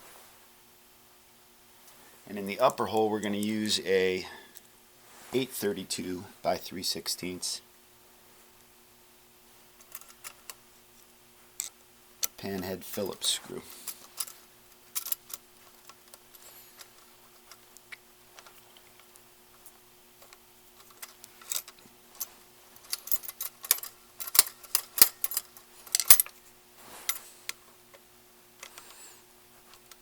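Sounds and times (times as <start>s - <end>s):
faint steady hum: 0.0s - 30.0s
screwdriver clicking on metal: 22.9s - 26.3s.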